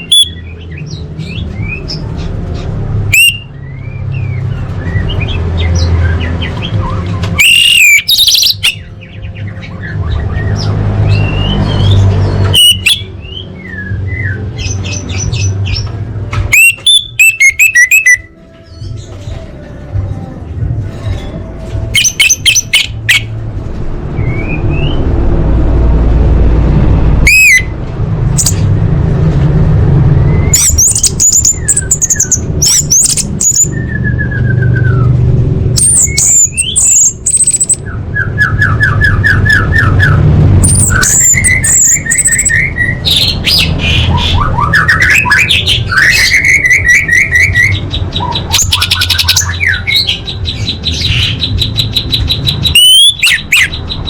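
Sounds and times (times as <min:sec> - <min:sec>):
thrush singing: 0:00.0 - 0:29.1, 0:29.8 - 0:54.0
steady low rumble: 0:23.3 - 0:38.2.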